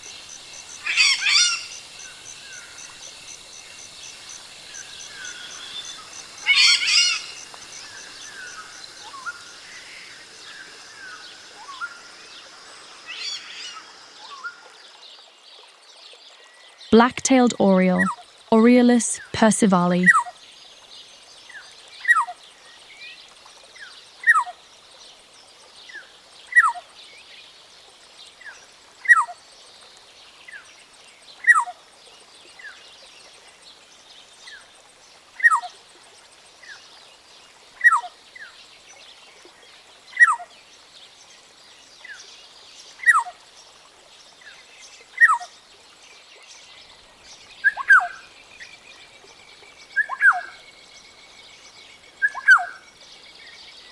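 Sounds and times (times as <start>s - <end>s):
high-pitched background hiss: 0.0s - 14.5s.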